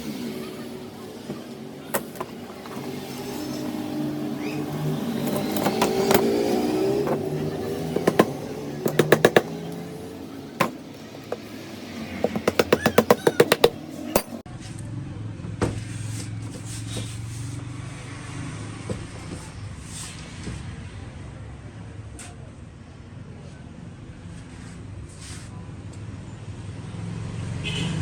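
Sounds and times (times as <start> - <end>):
single knocks: 7.0 - 9.9.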